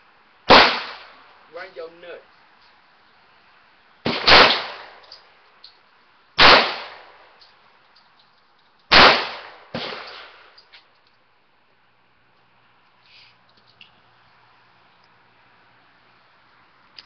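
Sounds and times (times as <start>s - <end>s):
pistol shots: 0.5s - 1.1s, 4.0s - 5.0s, 6.4s - 7.2s, 8.9s - 10.5s.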